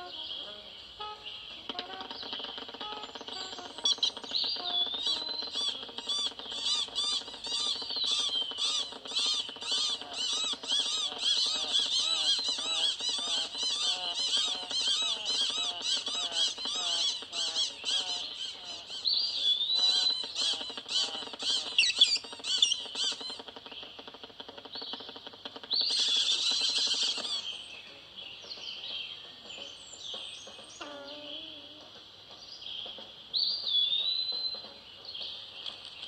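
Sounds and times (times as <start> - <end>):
harsh bird calling: 0.0 - 27.7
small birds chirping: 0.0 - 36.0.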